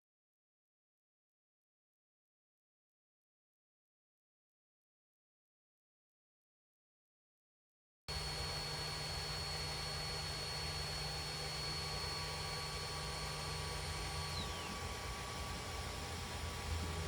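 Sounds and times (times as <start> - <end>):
high whine gliding down: 8.1 - 17.0
printer fan and motor hum: 8.1 - 17.0.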